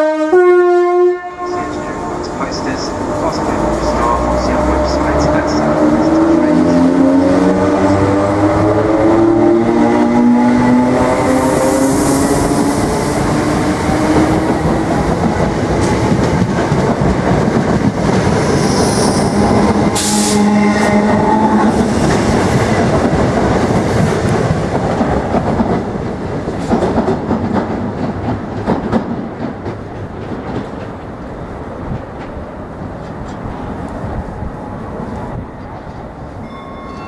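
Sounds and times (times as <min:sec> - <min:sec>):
train whine: 0:00.0 - 0:37.0
train wheels rumbling on rails: 0:01.3 - 0:37.0.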